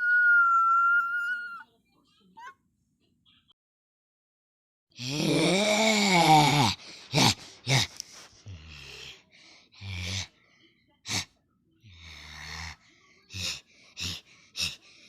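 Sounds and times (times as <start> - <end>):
person making vocal noises: 5.0 - 9.2
breathy gasps: 5.0 - 11.3, 11.9 - 15.0.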